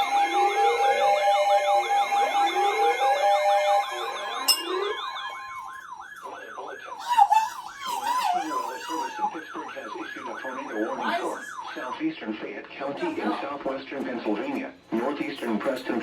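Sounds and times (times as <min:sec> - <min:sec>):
electronic sirens yelping and wailing: 0:00.0 - 0:12.1
pulsing steady tone: 0:04.5 - 0:05.1.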